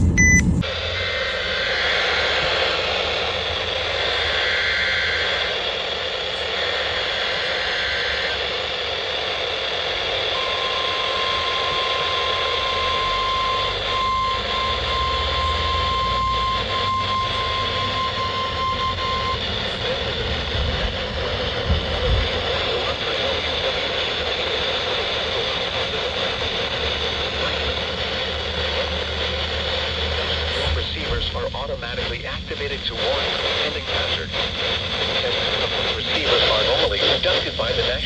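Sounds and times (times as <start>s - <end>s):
digital header tones: 0.0s - 2.3s, 10.3s - 20.5s
steady warning alarm tone: 0.0s - 6.0s, 9.4s - 28.4s
radio hiss: 0.2s - 38.0s.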